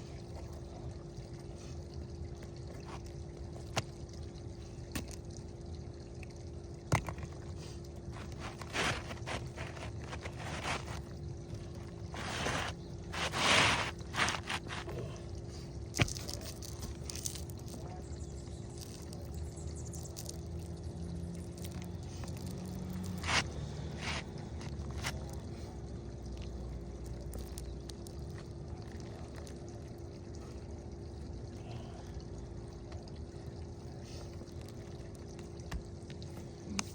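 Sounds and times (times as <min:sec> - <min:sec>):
shingle scraping and rustling: 0:08.0 - 0:15.2, 0:23.2 - 0:25.2.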